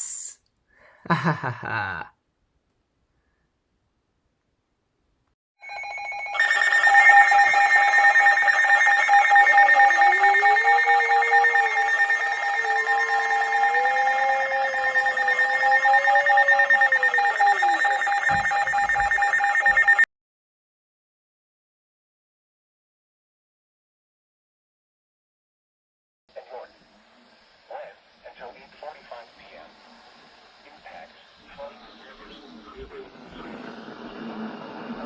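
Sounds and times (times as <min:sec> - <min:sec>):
fluttering electronic alarm tone: 0:05.6 - 0:20.1.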